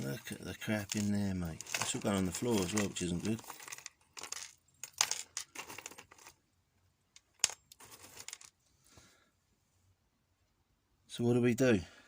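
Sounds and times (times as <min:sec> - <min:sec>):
metal scrap clinking and rattling: 0:00.0 - 0:06.4, 0:07.2 - 0:08.5.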